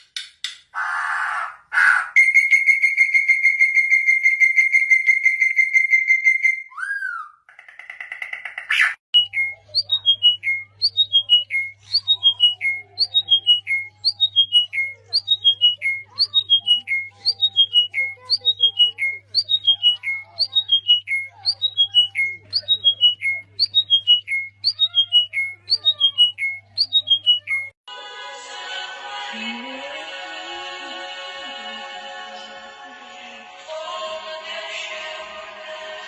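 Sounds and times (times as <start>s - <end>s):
bird whistling calls: 8.7s - 27.7s.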